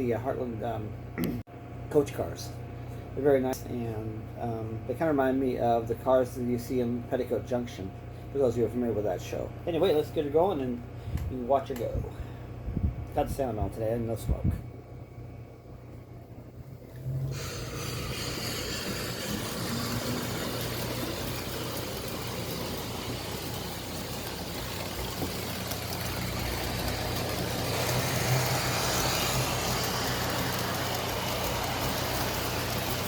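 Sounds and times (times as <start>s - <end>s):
low hum of wheels on track: 16.6s - 33.0s
model steam locomotive hissing: 17.2s - 33.0s.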